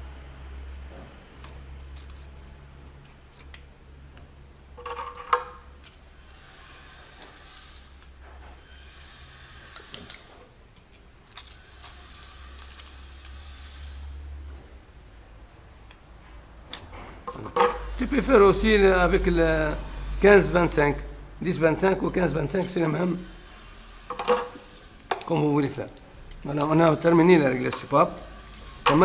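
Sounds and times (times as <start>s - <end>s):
metal tools clinking: 16.7s - 17.9s, 21.9s - 22.9s, 24.1s - 29.0s.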